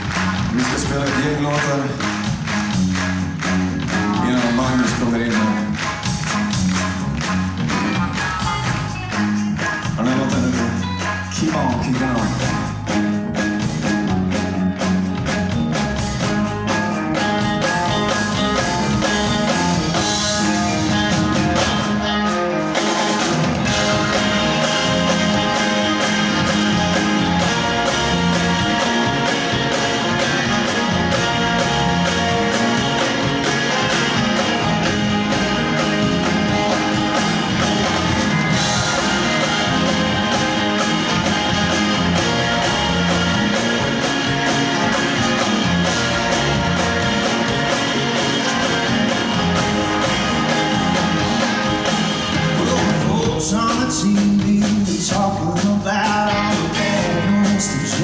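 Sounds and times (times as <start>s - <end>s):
drum kit steady beat: 0.0s - 58.0s
electric guitar: 0.0s - 58.0s.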